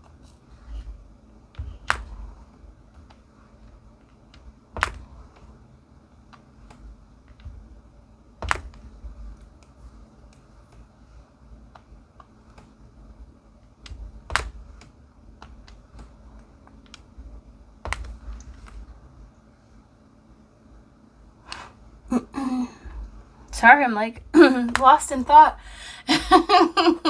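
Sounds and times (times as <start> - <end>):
sharp clicks with dull thump: 1.6 - 3.2, 4.4 - 5.5, 8.4 - 9.7, 13.8 - 17.1, 17.8 - 18.9.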